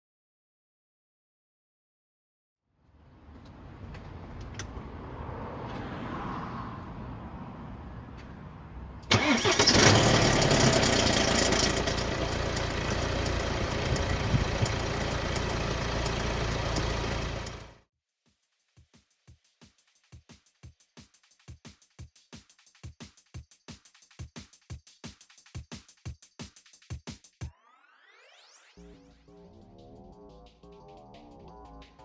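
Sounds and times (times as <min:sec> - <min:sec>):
diesel engine starting and idling: 0:09.0 - 0:17.8.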